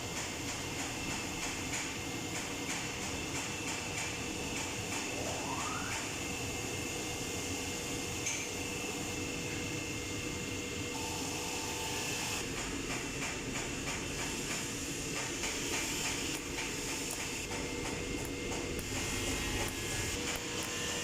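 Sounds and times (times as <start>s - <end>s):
welding hiss and hum: 0.0s - 21.0s
welding crackle: 15.4s - 21.0s.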